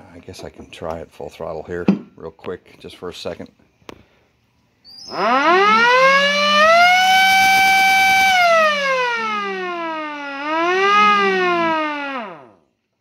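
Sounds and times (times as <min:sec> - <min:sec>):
electric motor siren wailing: 0:05.1 - 0:12.7.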